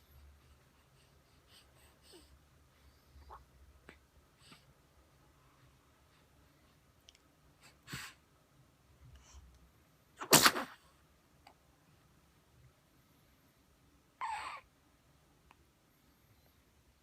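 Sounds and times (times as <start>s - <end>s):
baby sneezing: 10.2s - 10.8s.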